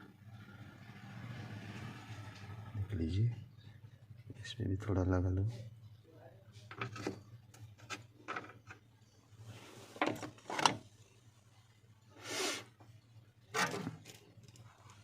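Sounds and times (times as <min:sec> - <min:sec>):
short rubbing hiss: 0:12.2 - 0:12.8
small tools clicking and scraping: 0:13.6 - 0:15.0.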